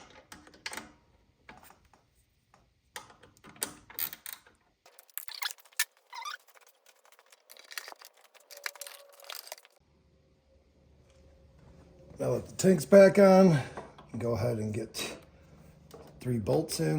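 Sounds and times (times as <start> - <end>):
hand tools and bolts clattering: 4.9 - 9.8.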